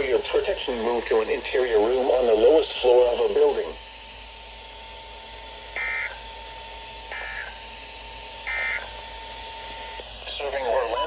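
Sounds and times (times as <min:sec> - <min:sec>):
buzzy digital chirps: 0:05.7 - 0:06.4, 0:07.1 - 0:11.0.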